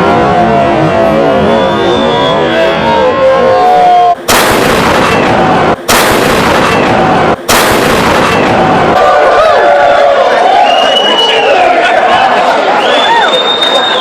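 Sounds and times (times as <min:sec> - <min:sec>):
cannon blast: 0:04.2 - 0:09.0.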